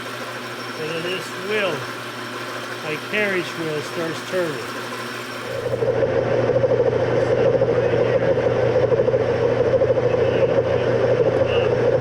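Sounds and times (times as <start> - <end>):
cutting tool fluttering: 0.0 - 5.9
lathe humming: 0.0 - 6.6.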